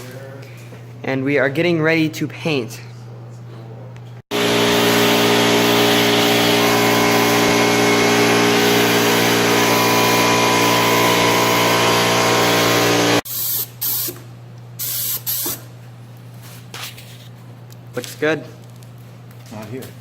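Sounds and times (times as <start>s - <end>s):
spray gun hissing: 4.5s - 14.2s, 14.8s - 15.6s
short spray gun spurts: 8.6s - 14.2s, 14.8s - 15.6s.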